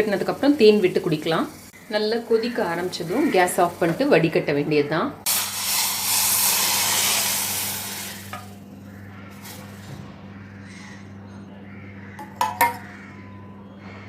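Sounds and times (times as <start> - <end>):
hot liquid hissing in metal vessel: 5.3 - 8.5.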